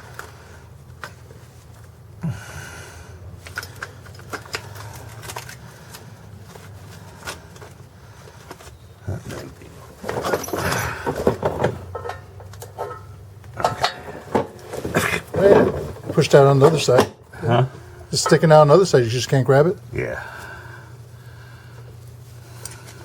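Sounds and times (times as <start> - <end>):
metal hand tools clattering: 10.0 - 17.2, 18.2 - 18.8.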